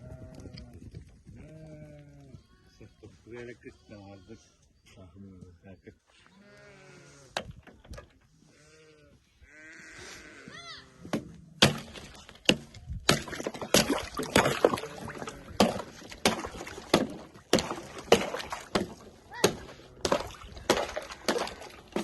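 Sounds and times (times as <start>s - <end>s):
sheep bleating: 1.4s - 2.9s, 6.1s - 7.4s, 8.4s - 11.1s, 14.7s - 15.6s.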